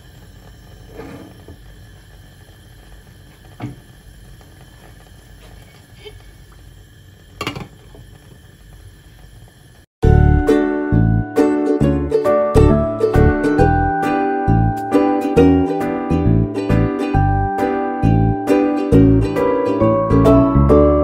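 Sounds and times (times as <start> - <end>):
upbeat plucked-string music: 10.0 - 21.0.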